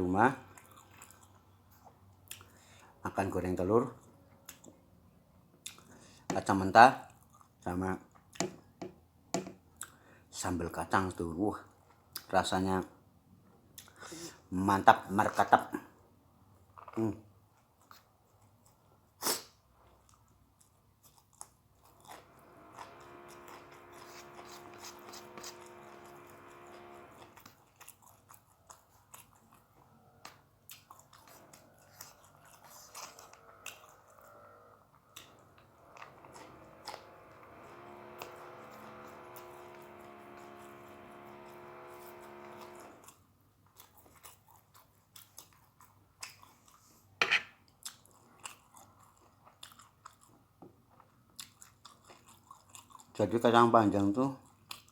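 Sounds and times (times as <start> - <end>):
crunchy chewing: 0.5 - 2.5, 27.1 - 40.5, 41.4 - 47.0, 47.7 - 53.2.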